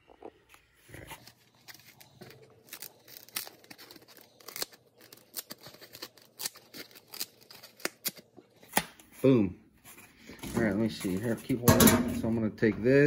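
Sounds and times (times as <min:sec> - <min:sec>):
scissors cutting foam: 0:00.5 - 0:09.1.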